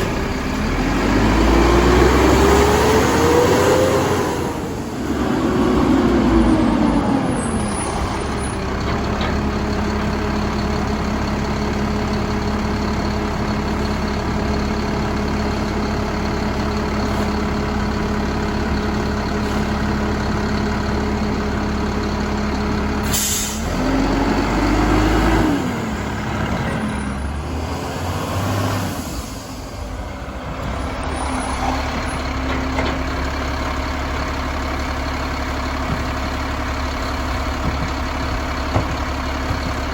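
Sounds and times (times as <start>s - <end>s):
garbage truck engine droning: 0.0s - 39.9s
air brake hiss: 23.0s - 23.7s.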